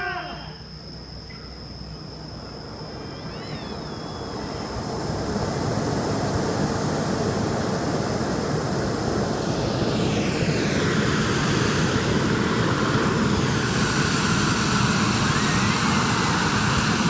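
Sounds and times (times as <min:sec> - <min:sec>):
firework fountain hissing: 0:02.2 - 0:17.0
thin high tone: 0:02.9 - 0:04.8.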